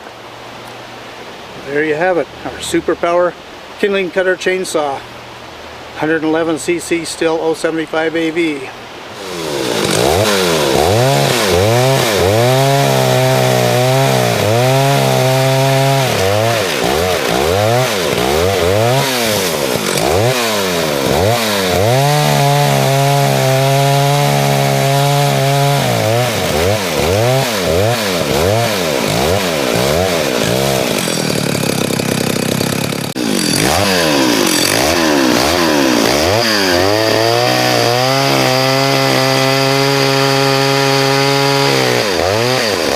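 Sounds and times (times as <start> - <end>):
chainsaw revving: 9.1 - 42.9.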